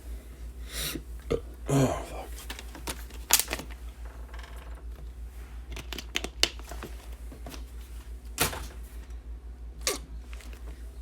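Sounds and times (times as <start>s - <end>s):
low electrical hum: 0.0s - 11.0s
card packs crinkling: 2.2s - 3.8s
cards clicking: 2.4s - 3.7s.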